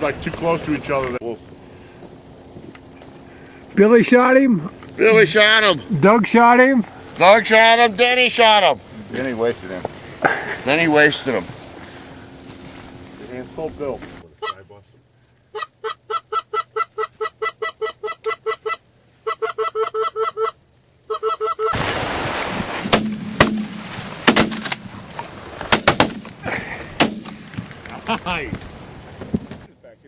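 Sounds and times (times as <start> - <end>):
goose honks: 14.4 - 14.8, 15.5 - 21.8
sharp cracks: 22.8 - 28.0.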